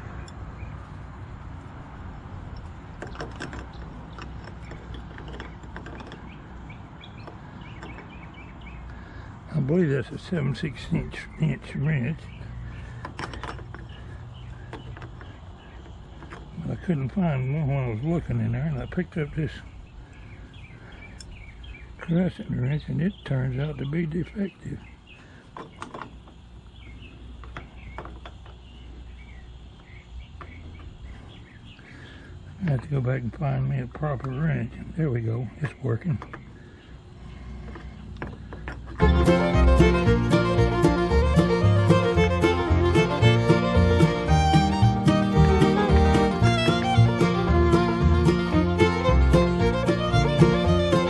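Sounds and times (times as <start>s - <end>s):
birds chirping faintly: 0.0s - 51.0s
small bird chirping: 3.1s - 9.3s, 13.7s - 32.8s.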